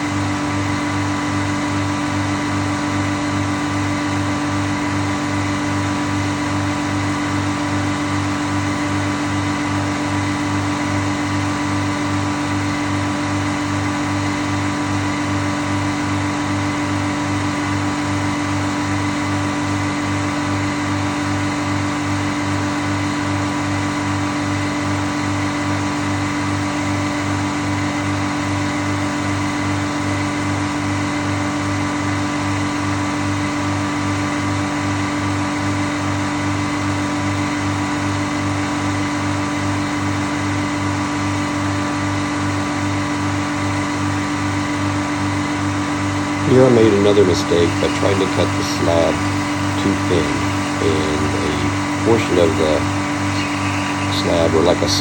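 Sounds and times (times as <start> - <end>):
sawmill mechanical drone: 0.0 - 55.0.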